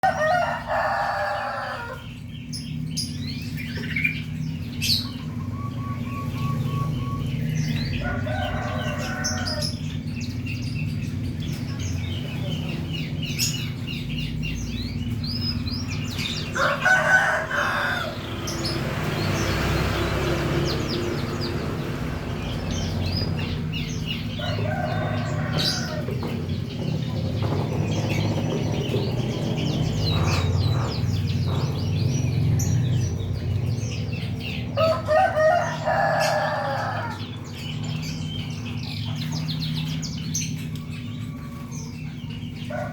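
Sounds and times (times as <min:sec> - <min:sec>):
rooster crowing: 0:00.0 - 0:02.1, 0:07.7 - 0:09.9, 0:16.2 - 0:26.4, 0:34.8 - 0:37.5
canary singing in chirps and trills: 0:00.0 - 0:42.9.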